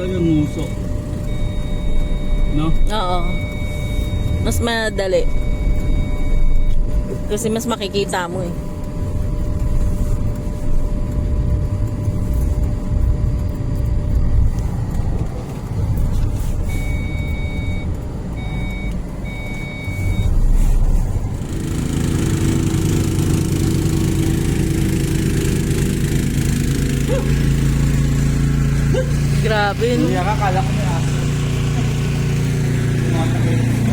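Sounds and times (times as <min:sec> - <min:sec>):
electronic beeps: 0:00.0 - 0:08.4, 0:16.5 - 0:20.9
car engine rumbling: 0:00.0 - 0:33.9.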